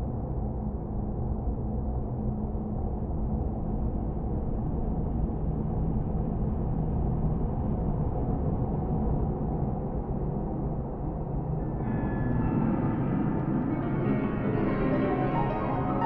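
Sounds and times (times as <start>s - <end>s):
low rumbling horror drone: 10.8s - 16.0s.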